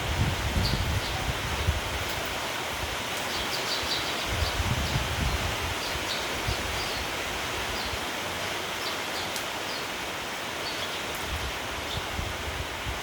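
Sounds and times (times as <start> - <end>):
wind rumble on microphone: 0.0 - 8.2, 11.1 - 13.0
rain falling through trees: 0.0 - 13.0.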